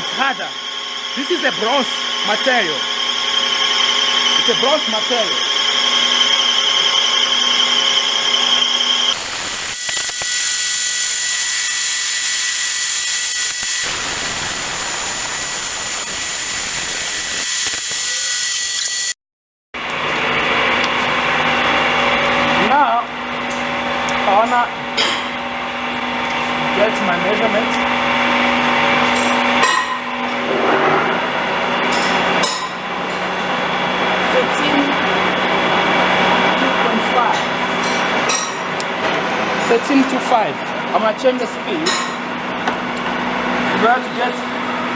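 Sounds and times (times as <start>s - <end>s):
lathe cutting metal: 9.1s - 19.2s.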